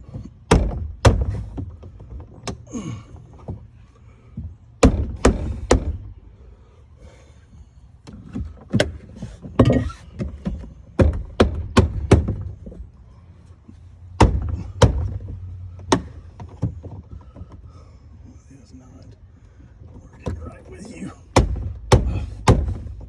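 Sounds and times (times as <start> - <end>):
sharp knocks and clunks: 0.0 - 2.7, 4.3 - 6.3, 8.0 - 12.9, 14.2 - 17.7, 19.8 - 23.0.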